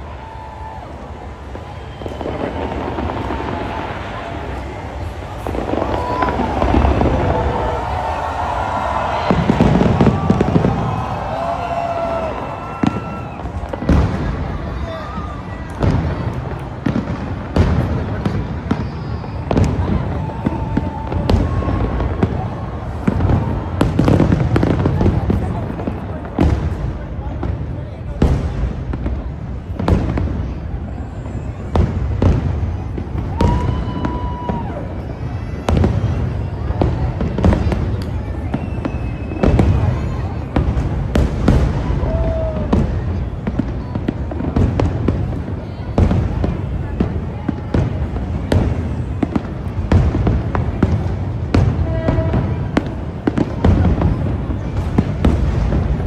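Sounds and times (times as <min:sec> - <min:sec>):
high firework whistle: 0:00.0 - 0:16.4, 0:18.0 - 0:24.8, 0:30.8 - 0:43.3
fireworks bangs: 0:00.0 - 0:56.0.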